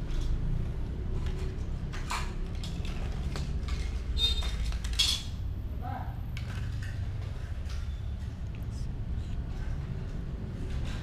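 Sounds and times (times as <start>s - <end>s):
light clinks and rattles: 0.0s - 5.5s.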